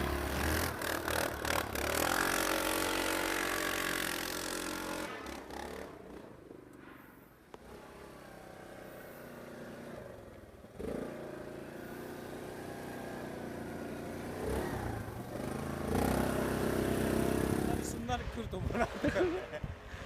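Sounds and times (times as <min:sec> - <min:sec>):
atv engine revving: 0:00.0 - 0:06.5, 0:07.5 - 0:19.4.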